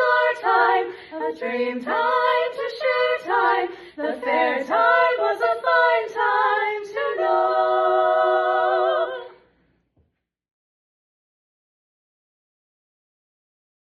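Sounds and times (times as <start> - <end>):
a cappella group singing in harmony: 0.0 - 9.6.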